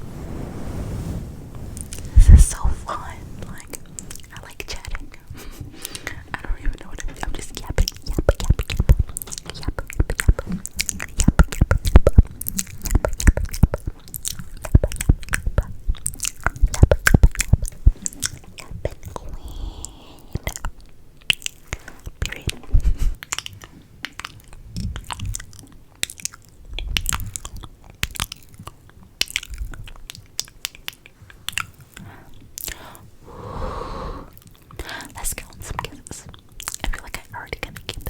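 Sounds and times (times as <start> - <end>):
wet mouth clicks and smacks: 5.7 - 19.4, 20.3 - 32.9, 34.3 - 38.0.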